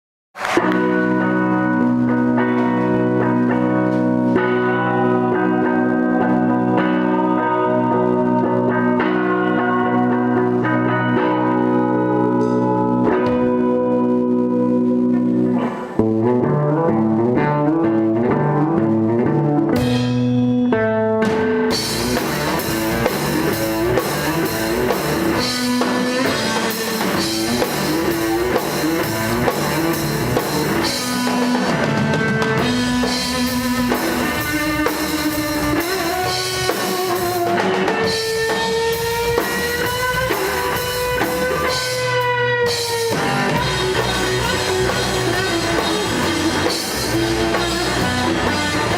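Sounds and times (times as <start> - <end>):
bending lead guitar line: 0.4 - 48.9
electric guitar riff: 0.4 - 48.9
drum kit with cymbals: 21.2 - 48.9.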